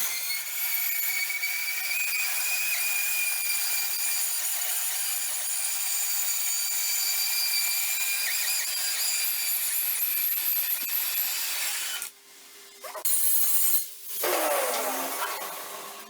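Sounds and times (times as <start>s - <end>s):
angle grinder grinding metal: 14.2s - 16.0s.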